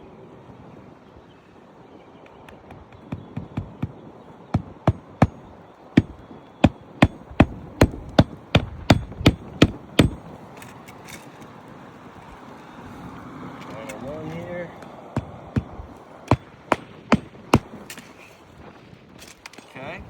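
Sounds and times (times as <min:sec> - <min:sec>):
hammer striking nails: 0:02.7 - 0:10.3, 0:15.2 - 0:18.1.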